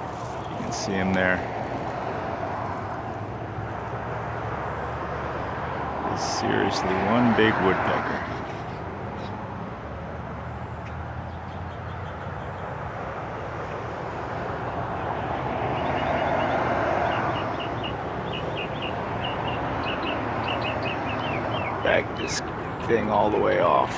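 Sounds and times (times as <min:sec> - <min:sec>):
road traffic rumble: 0:00.0 - 0:23.9
vehicle passing: 0:00.0 - 0:23.9
small bird chirping: 0:15.8 - 0:23.8.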